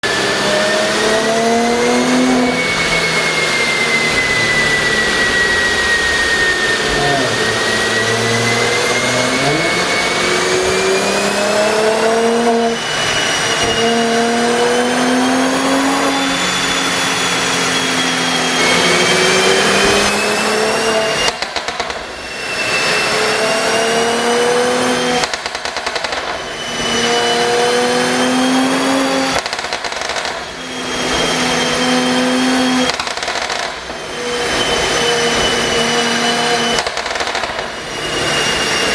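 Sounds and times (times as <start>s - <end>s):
car engine revving: 0.0s - 38.9s
exhaust crackling pops: 18.6s - 22.2s, 24.2s - 27.7s, 28.8s - 31.3s, 32.6s - 38.1s.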